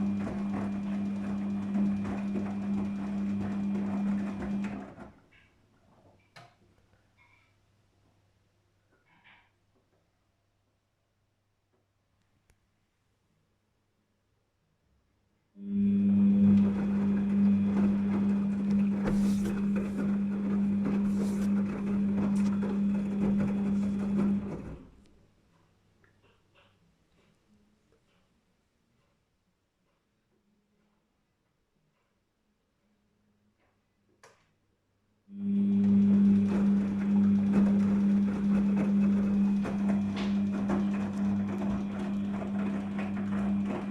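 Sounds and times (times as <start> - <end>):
washing machine drum humming: 0.0 - 5.1, 15.6 - 25.0, 35.4 - 43.9.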